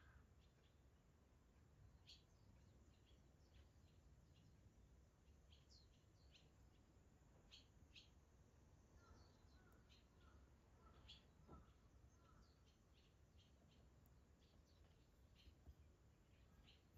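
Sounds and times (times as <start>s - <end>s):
swallows chirping: 9.0s - 16.9s.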